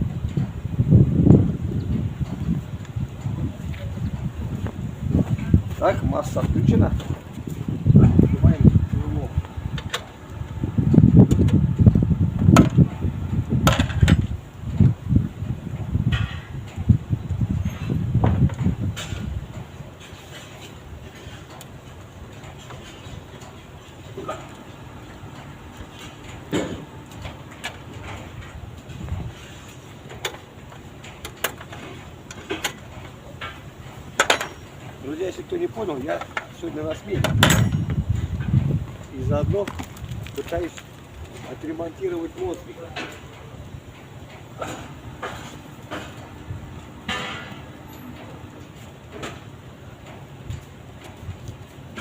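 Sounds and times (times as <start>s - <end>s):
steady low rumble: 0.0s - 42.0s, 43.2s - 52.0s
low background hum: 0.0s - 52.0s
hand tools clanking on metal: 18.6s - 38.6s, 39.5s - 46.4s, 47.0s - 50.2s
tools clicking and tapping metal: 34.2s - 35.0s.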